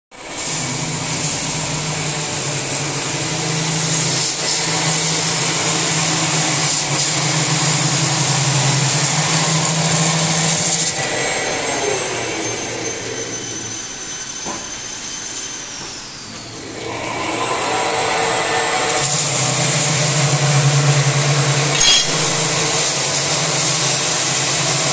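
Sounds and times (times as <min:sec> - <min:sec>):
high whine: 0:16.8 - 0:24.9
abrasive grinding: 0:20.7 - 0:23.0.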